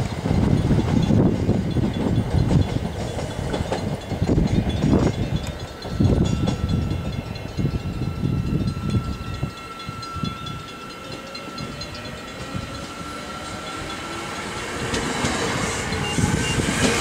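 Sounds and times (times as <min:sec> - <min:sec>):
train rumbling by: 0:00.0 - 0:17.0
thin steady whine: 0:04.2 - 0:17.0.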